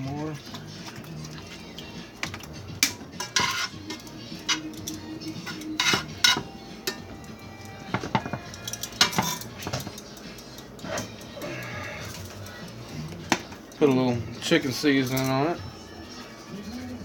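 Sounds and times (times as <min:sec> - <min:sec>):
metal tongs scraping a skillet: 0:02.2 - 0:07.1, 0:07.9 - 0:12.9.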